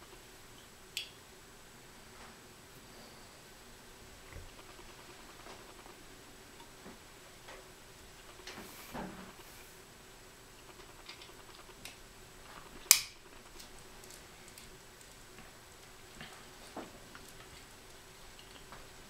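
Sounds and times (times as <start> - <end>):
loud sharp click: 12.8 - 13.2.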